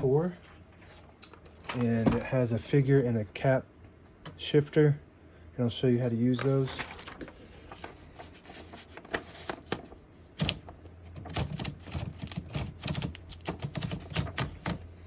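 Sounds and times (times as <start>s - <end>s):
typewriter clicking: 10.4s - 14.9s.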